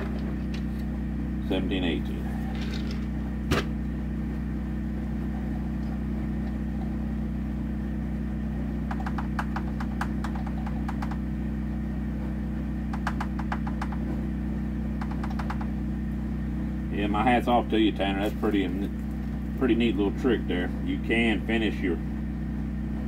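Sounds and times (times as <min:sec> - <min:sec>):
low mechanical hum: 0:00.0 - 0:23.0
rapid light clicks: 0:08.8 - 0:11.3, 0:12.9 - 0:14.1, 0:15.0 - 0:15.8.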